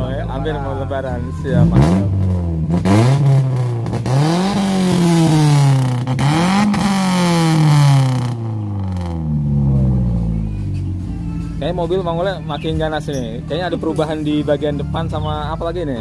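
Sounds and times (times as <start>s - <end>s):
engine idling: 0.0s - 16.0s
car engine revving loud exhaust: 1.5s - 11.0s.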